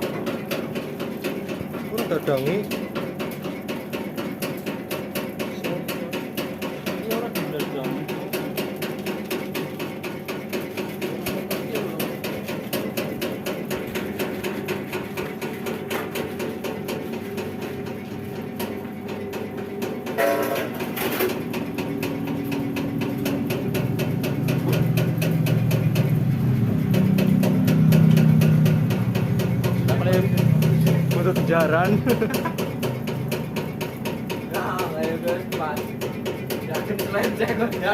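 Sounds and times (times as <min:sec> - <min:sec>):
low motor hum: 0:11.0 - 0:34.4.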